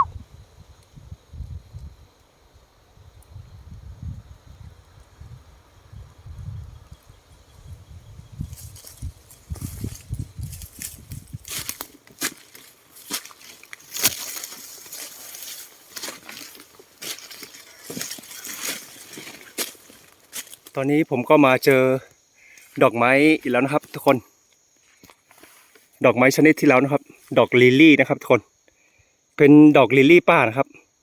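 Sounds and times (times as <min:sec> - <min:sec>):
wind buffeting microphone: 0:03.0 - 0:11.7
footsteps crunching through dry leaves: 0:08.4 - 0:20.9.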